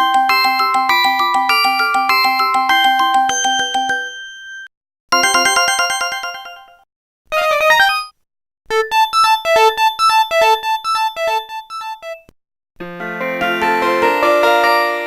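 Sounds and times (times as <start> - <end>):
phone ringtones: 0.0 - 6.8, 7.4 - 8.1, 8.7 - 12.3.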